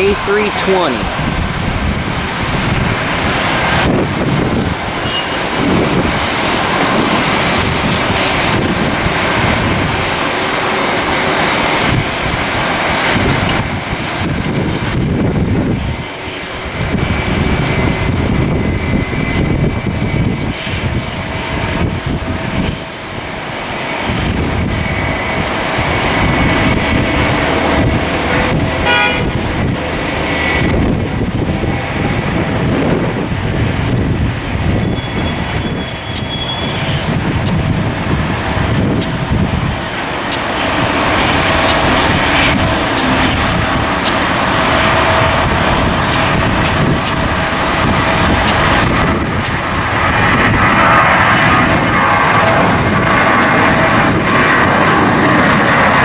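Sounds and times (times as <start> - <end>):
jet engines whining: 0.0 - 56.0
wind buffeting microphone: 0.0 - 56.0.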